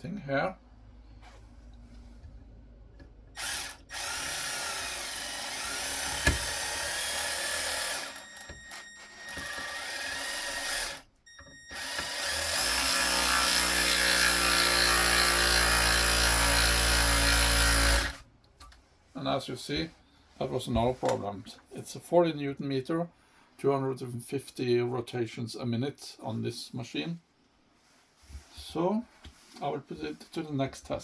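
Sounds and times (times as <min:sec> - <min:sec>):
cordless ratchet motor running: 0:03.4 - 0:11.0, 0:11.8 - 0:18.2.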